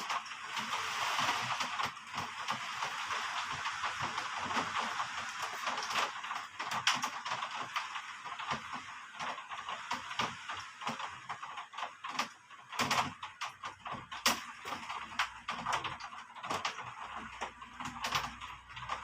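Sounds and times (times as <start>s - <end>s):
heavy rain hissing: 0.0s - 11.0s
raindrops tapping on a surface: 0.0s - 19.0s.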